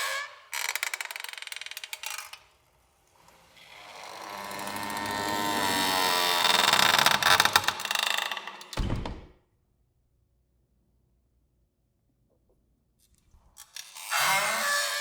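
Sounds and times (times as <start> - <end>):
door creaking: 0.0 - 2.4, 3.6 - 9.4, 13.8 - 15.0.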